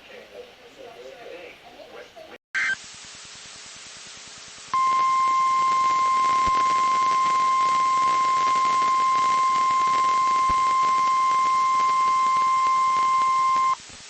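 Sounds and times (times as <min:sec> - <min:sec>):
radio static hiss: 0:00.0 - 0:14.0
steady warning alarm tone: 0:04.8 - 0:13.8.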